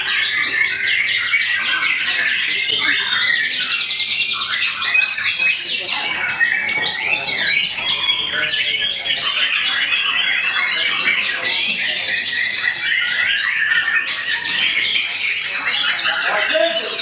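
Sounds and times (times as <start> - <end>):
songbirds chirping and trilling: 0.0 - 17.0.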